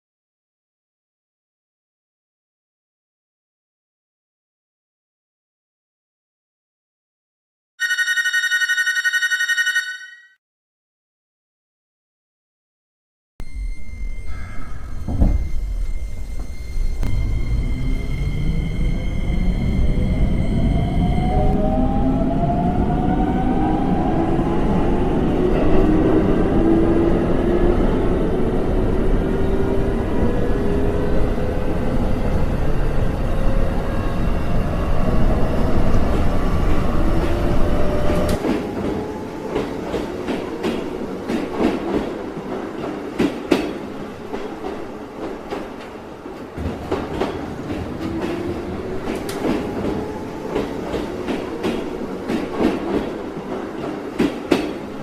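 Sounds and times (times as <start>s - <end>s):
electric train whine: 13.4s - 55.0s
heavy train rumble: 13.5s - 55.0s.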